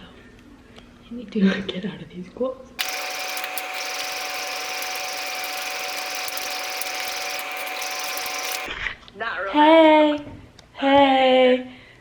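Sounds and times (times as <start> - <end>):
small electric motor whirring: 2.8 - 8.7.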